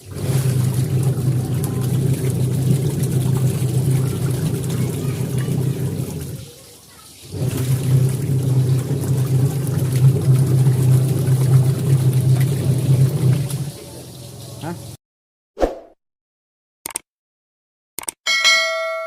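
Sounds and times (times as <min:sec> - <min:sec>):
water sloshing: 0:00.0 - 0:06.4
washing machine motor running: 0:00.0 - 0:15.0.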